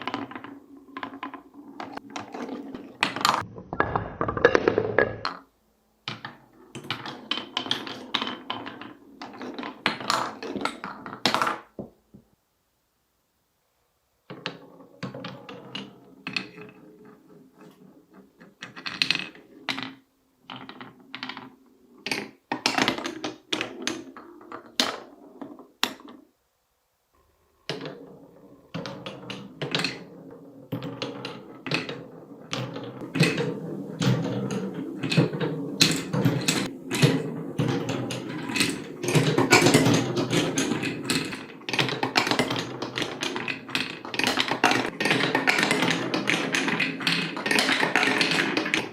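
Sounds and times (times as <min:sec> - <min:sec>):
marbles rolling on wooden track: 0:00.0 - 0:05.5, 0:06.1 - 0:11.8, 0:14.3 - 0:26.2, 0:27.6 - 0:48.9
marbles tapping the track: 0:27.7 - 0:48.9.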